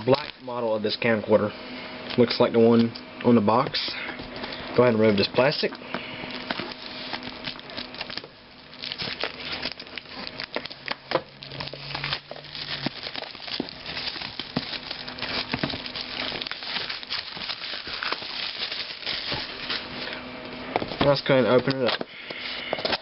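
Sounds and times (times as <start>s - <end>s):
plastic wrap crinkling: 0.0s - 1.0s, 5.3s - 20.2s.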